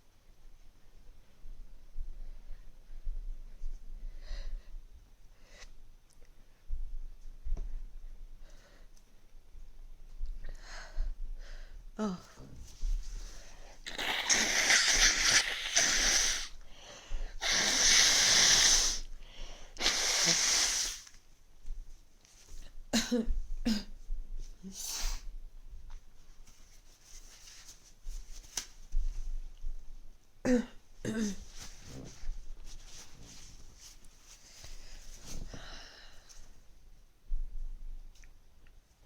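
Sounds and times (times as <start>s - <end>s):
person blowing nose: 13.8s - 16.6s, 17.3s - 19.2s, 19.8s - 21.1s, 24.8s - 25.3s
short quiet sniffs: 19.8s - 21.2s, 24.7s - 25.3s.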